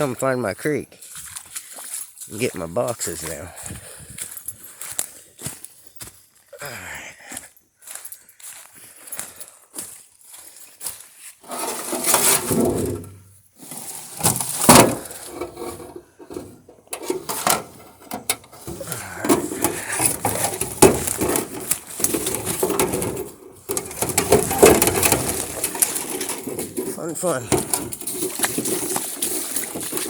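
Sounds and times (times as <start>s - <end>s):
metal scraping and knocking: 11.4s - 30.0s.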